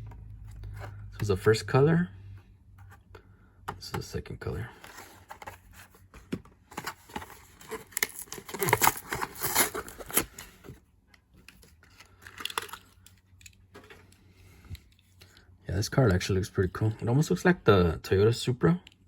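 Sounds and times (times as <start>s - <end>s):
cardboard tearing: 6.8s - 10.6s
plastic crinkling: 6.8s - 10.6s.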